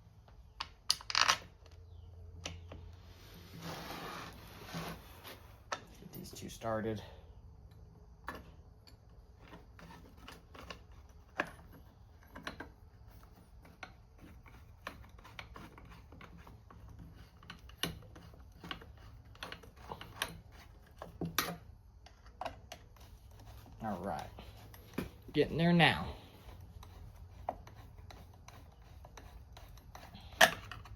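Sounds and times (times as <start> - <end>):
small metal parts and tools clicking: 7.6 - 25.0, 26.4 - 30.9.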